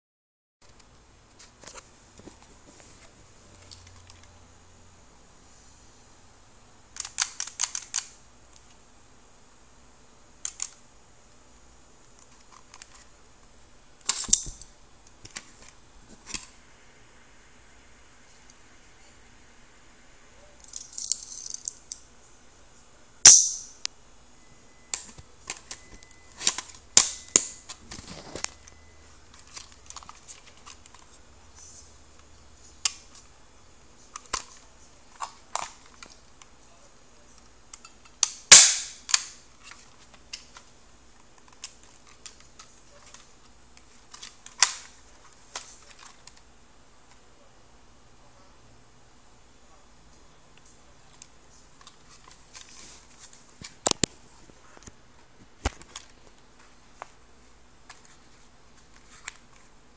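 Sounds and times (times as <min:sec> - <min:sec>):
pistol mechanism clicks: 0:23.3 - 0:23.7, 0:26.4 - 0:27.8, 0:37.7 - 0:39.4
loud sharp cracks: 0:38.2 - 0:39.4.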